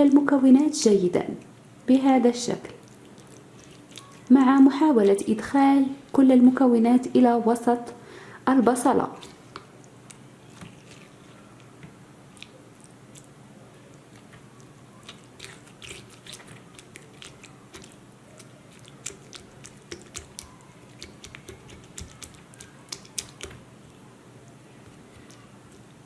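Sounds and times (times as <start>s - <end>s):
spoon clicks and wet crunches: 2.8s - 5.2s, 12.3s - 13.3s, 13.9s - 24.0s.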